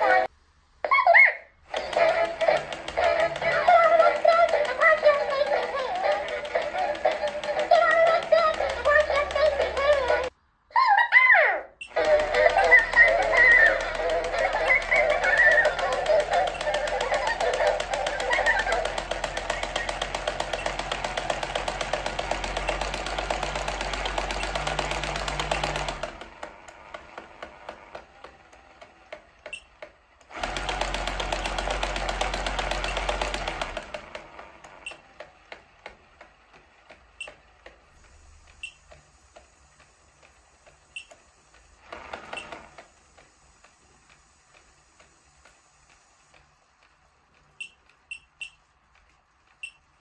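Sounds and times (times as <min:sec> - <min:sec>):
motor mechanism rattling rapidly: 0:01.7 - 0:10.3, 0:11.9 - 0:47.5
light regular clicks: 0:42.4 - 0:49.8.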